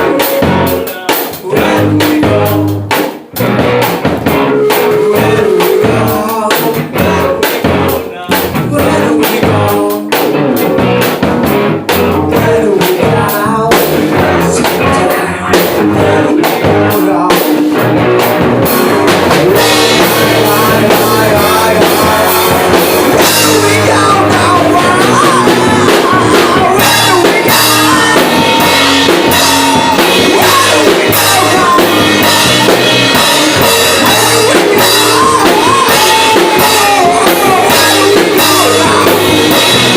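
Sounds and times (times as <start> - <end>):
person singing: 0.0 - 3.0, 4.2 - 11.1, 11.9 - 39.9
drum kit: 0.0 - 39.9
electric guitar: 0.0 - 39.9.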